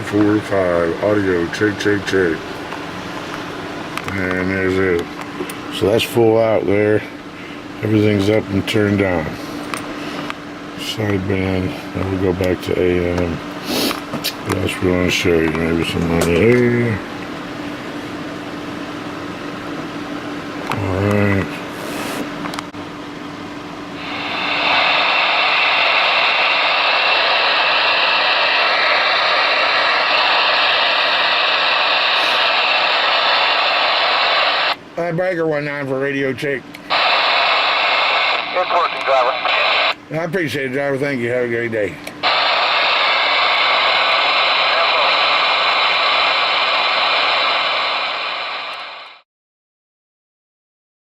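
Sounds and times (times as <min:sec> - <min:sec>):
radio static hiss: 0:00.0 - 0:02.4, 0:24.0 - 0:34.8, 0:36.9 - 0:40.0, 0:42.2 - 0:49.2.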